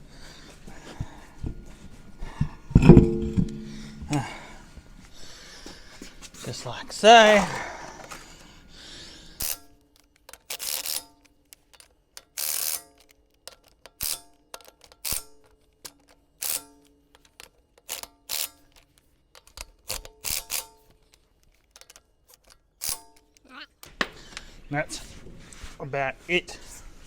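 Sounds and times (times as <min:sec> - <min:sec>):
metal tools clinking: 0:02.8 - 0:04.5.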